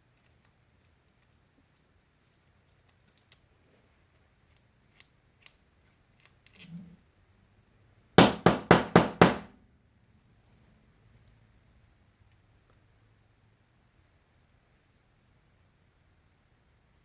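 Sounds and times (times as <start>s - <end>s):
parts knocking on hard surface: 8.2s - 9.5s.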